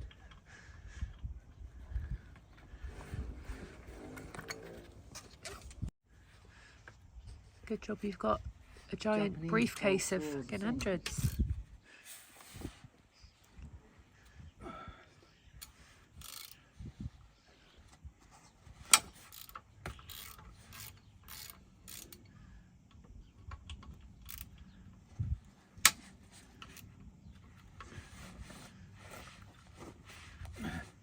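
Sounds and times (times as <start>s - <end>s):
socket ratchet clicking: 19.3s - 22.3s, 23.7s - 24.6s.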